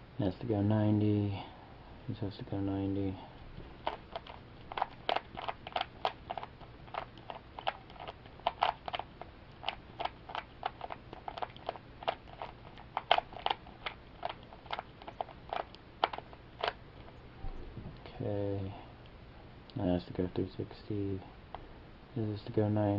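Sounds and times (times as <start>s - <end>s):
puzzle cube clicking: 3.7s - 17.1s.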